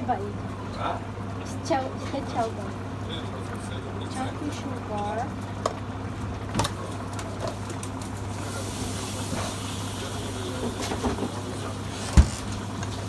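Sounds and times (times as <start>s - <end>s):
food sizzling in a pan: 8.3s - 12.0s.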